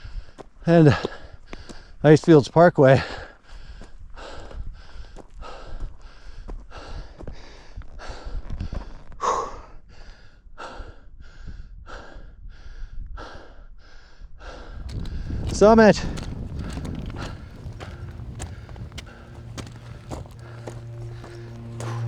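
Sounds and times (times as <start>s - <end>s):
person panting: 3.0s - 15.2s.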